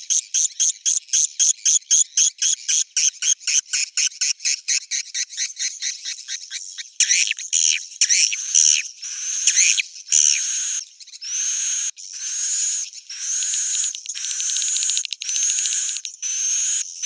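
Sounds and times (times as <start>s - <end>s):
high chirping twitters of swiftlets: 12.5s - 16.8s.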